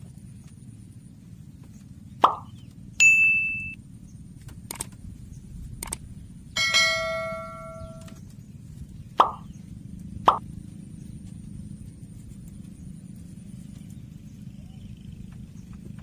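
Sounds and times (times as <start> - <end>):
plopping pops: 2.2 - 2.5, 9.2 - 9.4
metallic ding: 3.0 - 3.8, 6.6 - 8.1
metallic clang: 6.6 - 8.2.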